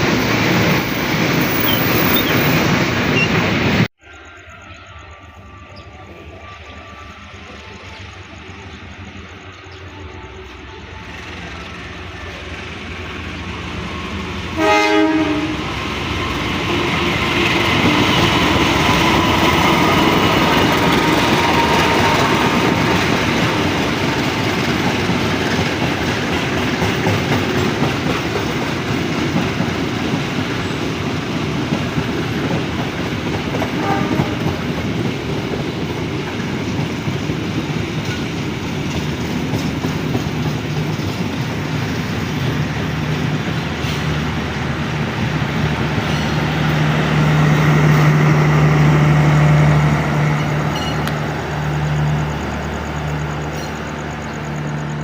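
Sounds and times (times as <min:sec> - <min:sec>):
train wheels rumbling on rails: 0:00.0 - 0:55.0
train horn blast: 0:14.4 - 0:17.2, 0:33.7 - 0:34.6.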